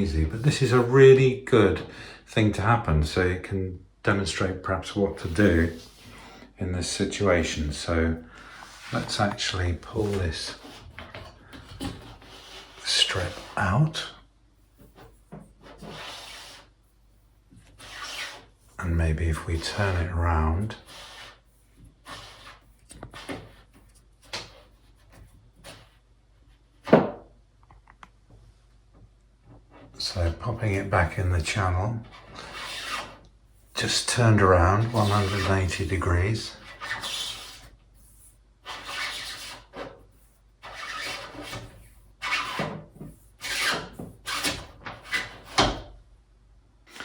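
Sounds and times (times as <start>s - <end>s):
plastic strip rubbing and scraping: 8.6s - 14.0s, 17.5s - 26.1s, 29.6s - 45.8s
plastic strip scraping rustles: 34.8s - 37.7s.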